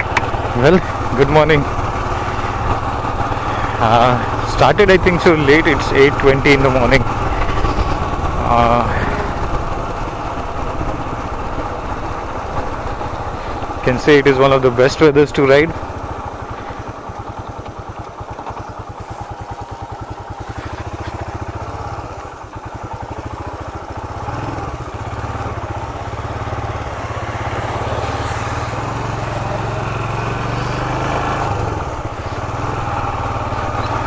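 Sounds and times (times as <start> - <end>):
motorcycle engine thumping: 0.0 - 24.3.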